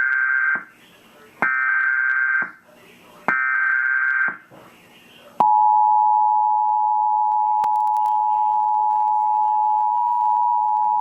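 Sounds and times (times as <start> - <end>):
two-tone attention signal: 5.4 - 11.0.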